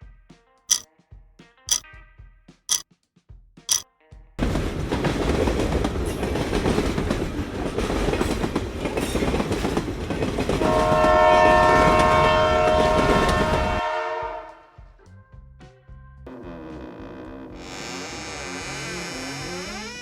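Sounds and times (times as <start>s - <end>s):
train rumble and rail clatter: 4.4s - 14.4s
train horn chord: 10.6s - 14.7s.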